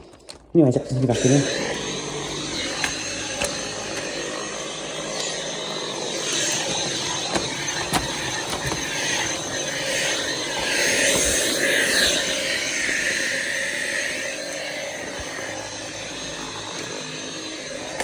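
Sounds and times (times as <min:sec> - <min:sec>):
vacuum cleaner whining: 0:00.0 - 0:18.0.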